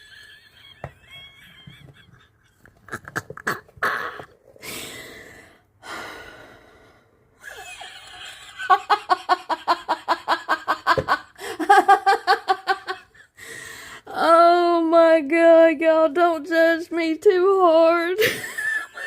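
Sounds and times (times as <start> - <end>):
woman laughing hard: 0.0 - 3.7, 7.4 - 13.3, 18.2 - 19.0.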